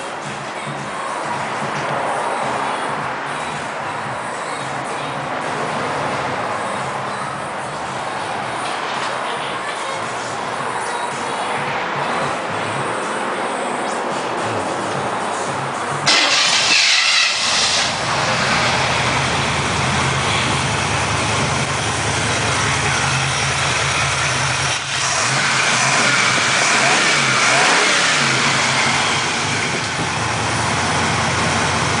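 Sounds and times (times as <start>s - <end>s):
car engine revving: 11.8s - 32.0s.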